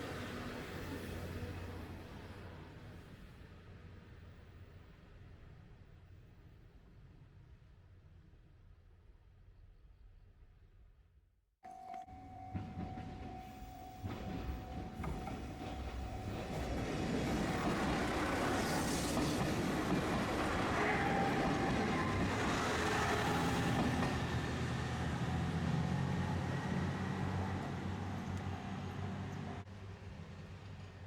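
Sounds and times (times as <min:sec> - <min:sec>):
train wheels rumbling on rails: 0:12.2 - 0:31.0.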